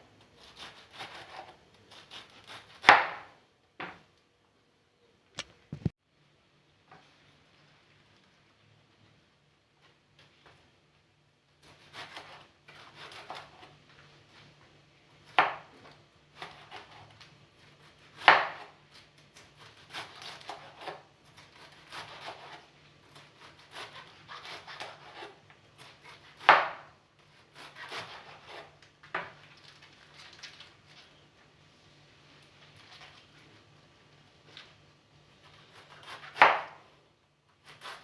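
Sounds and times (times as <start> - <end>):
knife slicing greens: 0.4 - 3.3, 11.6 - 13.7, 19.4 - 28.8, 35.4 - 36.8, 37.6 - 38.0.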